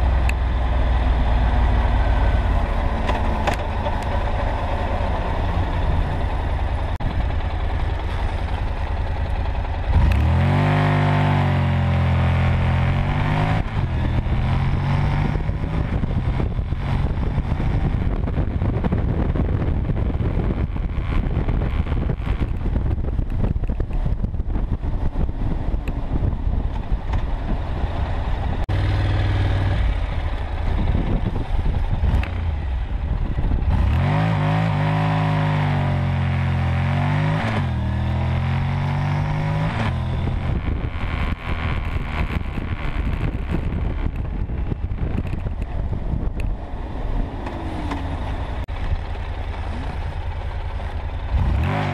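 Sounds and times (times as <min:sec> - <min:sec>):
motorcycle engine accelerating: 0:00.0 - 0:51.9
wind noise: 0:00.0 - 0:51.9.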